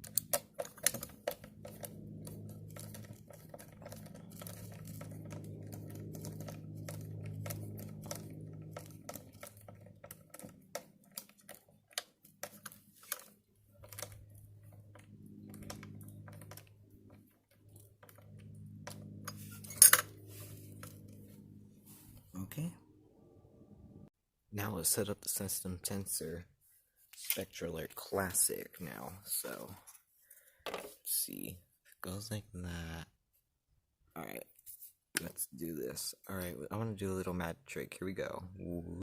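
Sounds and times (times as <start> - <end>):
clicks and taps of small parts: 0.0 - 14.2
low hum: 0.0 - 24.1.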